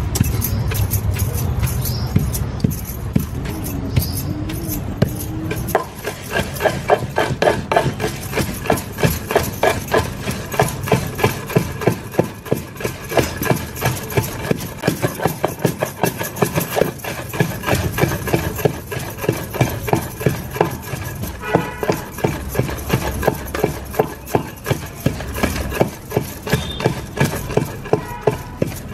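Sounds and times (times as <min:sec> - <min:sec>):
strikes of food preparation: 0:00.0 - 0:28.9.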